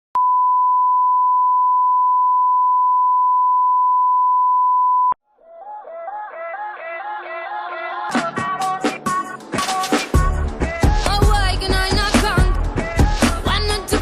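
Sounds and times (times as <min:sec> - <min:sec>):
steady loud beep tone: 0:00.2 - 0:05.2.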